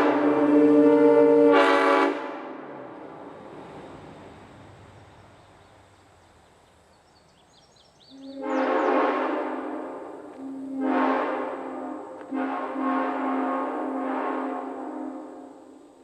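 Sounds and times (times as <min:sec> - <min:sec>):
locomotive air horn blast: 0:00.0 - 0:02.7, 0:08.2 - 0:15.8.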